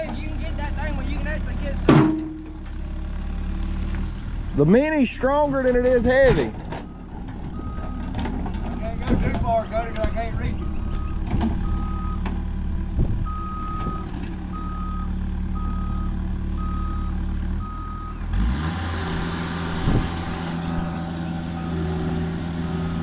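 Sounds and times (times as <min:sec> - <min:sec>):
diesel engine running: 0:00.0 - 0:23.0
backup alarm beeping: 0:10.5 - 0:12.2, 0:13.3 - 0:18.1.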